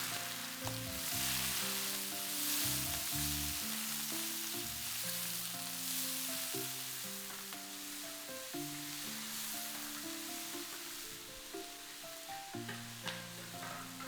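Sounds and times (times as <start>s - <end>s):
food sizzling in hot oil: 0.0s - 14.0s
gentle background music: 0.0s - 14.0s.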